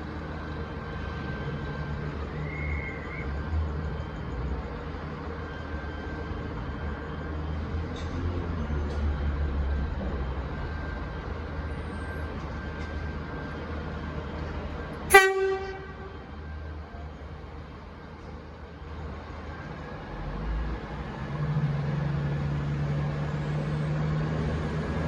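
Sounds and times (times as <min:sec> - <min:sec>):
diesel engines rumbling: 0:00.0 - 0:25.0
train horn blast: 0:15.1 - 0:16.5.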